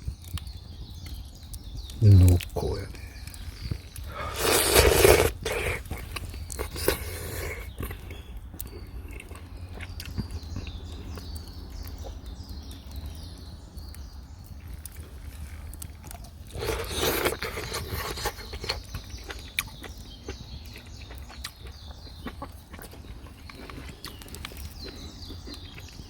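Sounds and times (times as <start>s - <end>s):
person slurping noodles: 4.1s - 7.7s, 16.5s - 18.4s.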